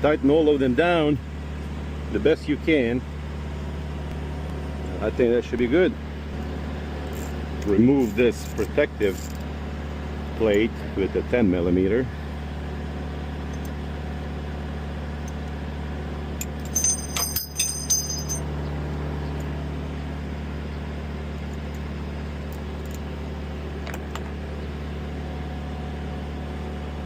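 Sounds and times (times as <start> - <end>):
low mechanical hum: 0.0 - 27.0
metallic clinks: 16.4 - 18.5.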